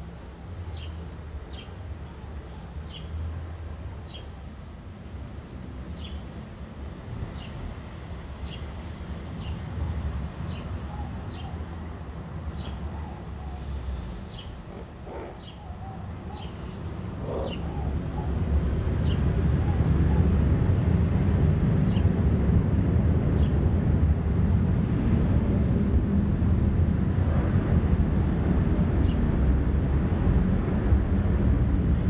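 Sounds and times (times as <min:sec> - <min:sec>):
steady low rumble: 0:11.6 - 0:32.0
bird chirping: 0:14.3 - 0:18.4.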